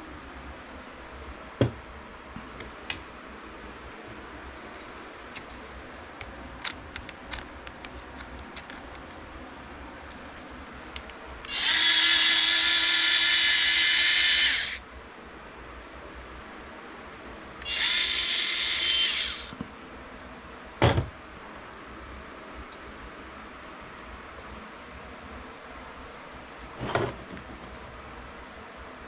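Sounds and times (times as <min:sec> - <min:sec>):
electric screwdriver running: 0:11.5 - 0:14.8, 0:17.6 - 0:19.6.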